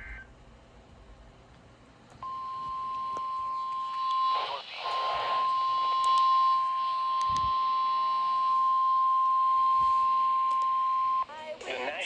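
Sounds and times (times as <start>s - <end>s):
steady alarm beep: 2.2s - 11.3s.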